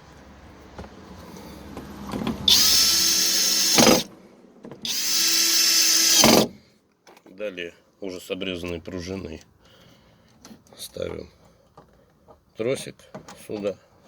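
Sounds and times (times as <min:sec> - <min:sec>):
cordless drill whining: 0:02.5 - 0:04.1, 0:04.8 - 0:06.5.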